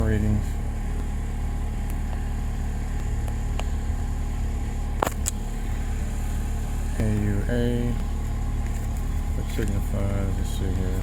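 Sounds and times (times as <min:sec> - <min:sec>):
car engine idling: 0:00.0 - 0:11.0
sharp clicks: 0:05.0 - 0:11.0.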